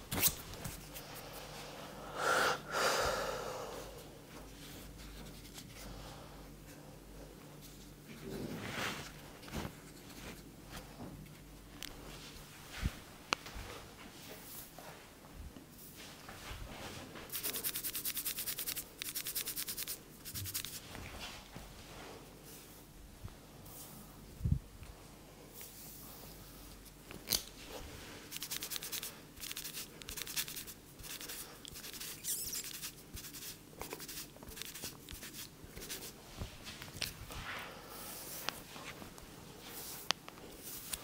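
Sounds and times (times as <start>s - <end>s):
hands rubbing through hair: 16.0s - 22.7s, 27.7s - 41.0s
hands rustling over hair: 32.8s - 41.0s.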